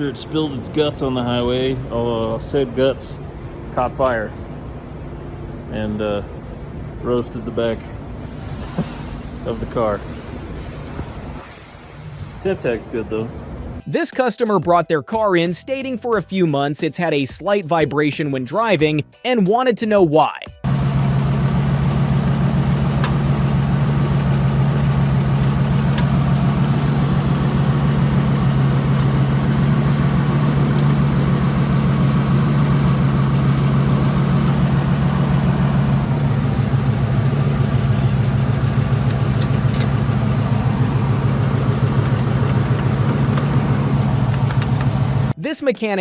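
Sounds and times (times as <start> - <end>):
car engine running: 20.7 - 45.4.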